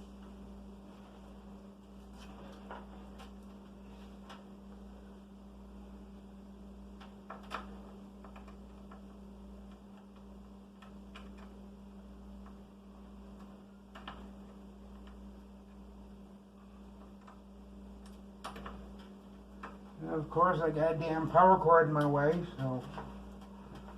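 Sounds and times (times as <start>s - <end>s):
low electrical hum: 0.0s - 23.9s.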